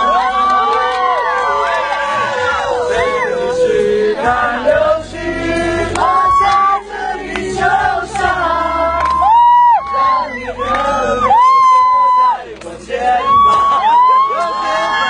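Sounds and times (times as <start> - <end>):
high shrill cheers: 0.0 - 3.5, 9.2 - 12.4, 13.2 - 15.0
crowd singing along: 0.0 - 15.0.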